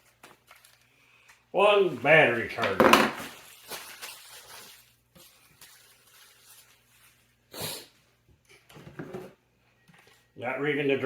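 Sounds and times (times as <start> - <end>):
packaging rustling: 0.0 - 1.4, 2.4 - 7.2.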